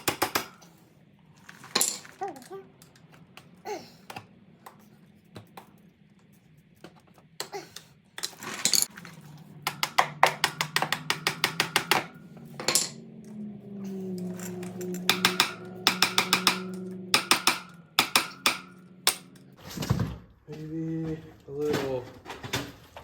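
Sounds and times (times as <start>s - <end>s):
metal tools clinking on chain: 8.3s - 8.9s, 12.6s - 13.0s, 13.9s - 15.8s
knocks: 15.0s - 19.3s.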